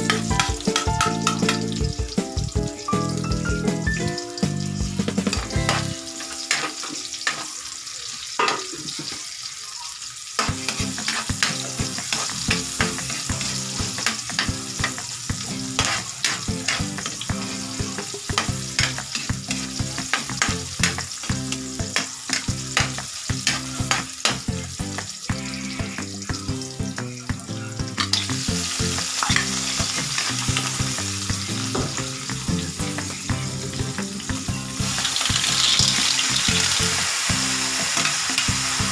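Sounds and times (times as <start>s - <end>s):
food sizzling in a hot pan: 0.0s - 38.9s
utensil scraping against pan: 5.6s - 7.6s, 10.4s - 15.0s, 15.8s - 21.0s.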